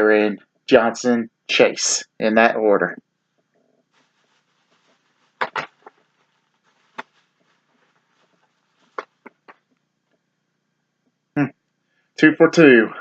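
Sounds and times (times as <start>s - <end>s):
faint rustle: 3.5s - 10.2s.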